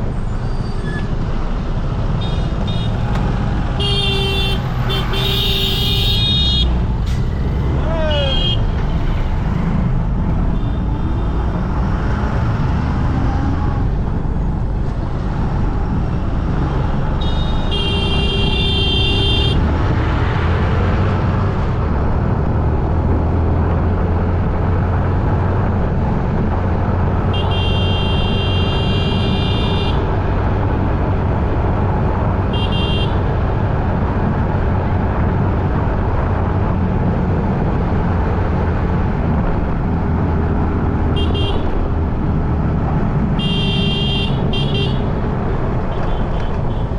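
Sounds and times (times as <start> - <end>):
road traffic rumble: 0.0 - 46.9
vehicle horns honking: 3.8 - 6.8, 8.1 - 8.7, 17.2 - 19.6, 27.3 - 30.0, 32.5 - 33.2, 41.2 - 41.7, 43.4 - 45.1.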